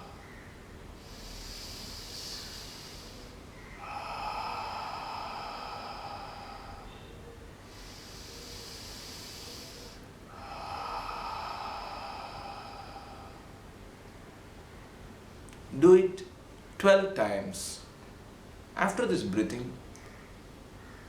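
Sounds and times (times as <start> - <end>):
slow deep breathing: 0.0 - 15.3.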